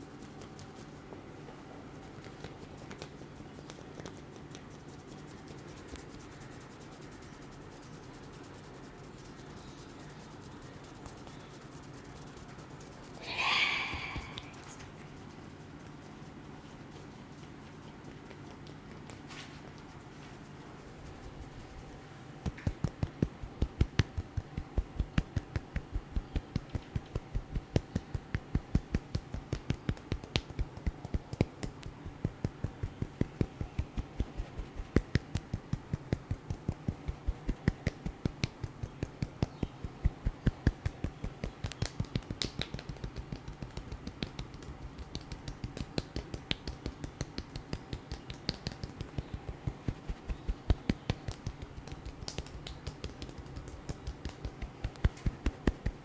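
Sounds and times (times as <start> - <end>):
hands slapping in head massage: 22.4 - 56.0.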